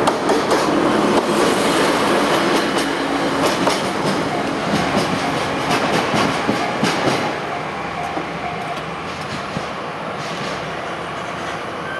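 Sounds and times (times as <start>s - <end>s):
freight train rolling rumble: 0.0s - 11.9s
wheels clacking over rail joints: 2.2s - 10.7s.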